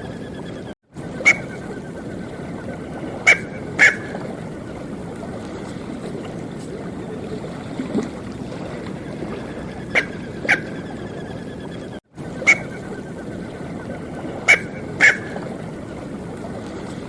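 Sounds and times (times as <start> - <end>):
duck sharp calls: 3.2 - 4.3, 9.8 - 11.0, 14.4 - 15.4.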